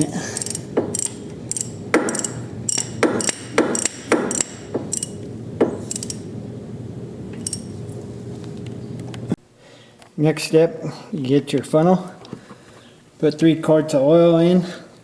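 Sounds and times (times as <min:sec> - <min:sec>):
socket ratchet clicking: 0:00.0 - 0:05.2, 0:05.8 - 0:06.2, 0:07.4 - 0:07.7.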